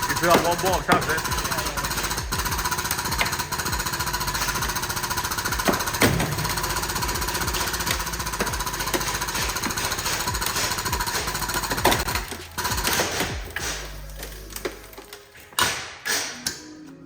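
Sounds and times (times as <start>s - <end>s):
power tool hammering: 0.0s - 14.8s
sharp knocks: 5.5s - 13.9s.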